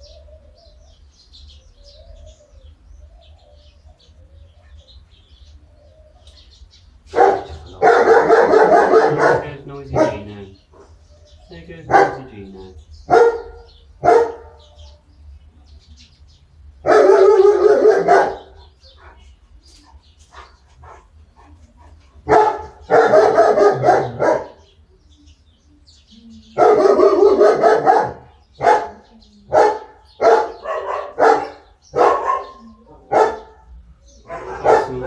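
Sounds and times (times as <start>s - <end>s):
dog barking: 7.1s - 10.5s, 11.8s - 12.4s, 13.1s - 14.6s, 16.8s - 19.2s, 22.2s - 24.6s, 26.6s - 35.0s.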